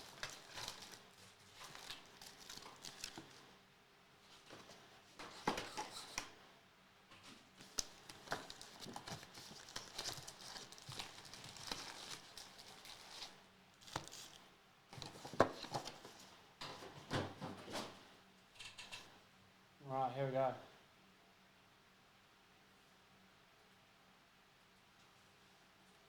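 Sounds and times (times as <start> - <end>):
plastic wrapping crinkling and tearing: 0.0 - 3.5, 7.6 - 14.4, 15.0 - 16.3.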